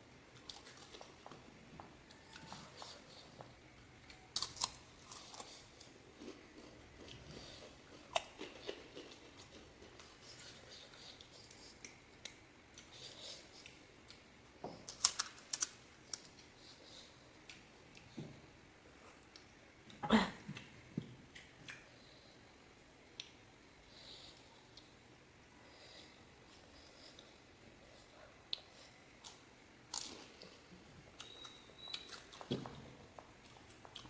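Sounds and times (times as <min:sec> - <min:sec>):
crunchy food being bitten: 0:04.1 - 0:10.5.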